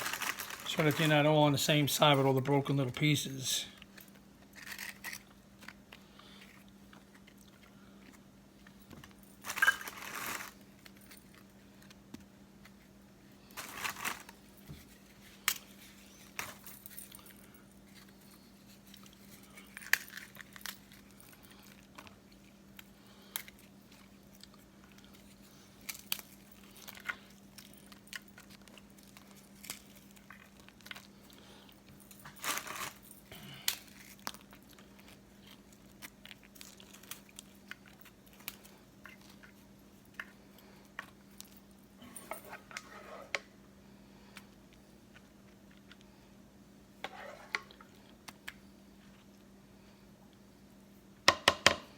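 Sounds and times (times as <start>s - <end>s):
crackers snapping and crunching: 0.0s - 1.2s, 3.8s - 7.8s, 15.4s - 41.6s
faint steady hum: 0.0s - 51.9s.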